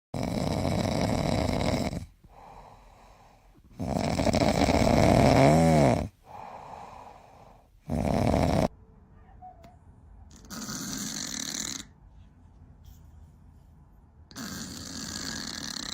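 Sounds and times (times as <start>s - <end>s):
animal snoring loudly: 0.2s - 2.8s, 3.7s - 7.1s, 7.8s - 8.7s, 10.3s - 12.0s, 14.3s - 15.9s
quiet breaths: 1.3s - 4.8s, 6.0s - 8.0s, 11.8s - 14.3s.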